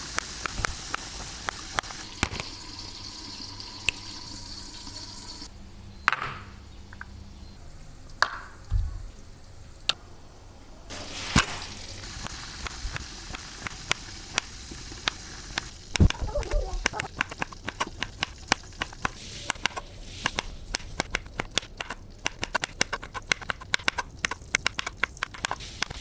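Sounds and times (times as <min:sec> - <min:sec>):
steady hiss: 0:00.0 - 0:05.5, 0:07.6 - 0:22.4, 0:25.2 - 0:26.0
utensils knocking and clicking: 0:12.2 - 0:26.0.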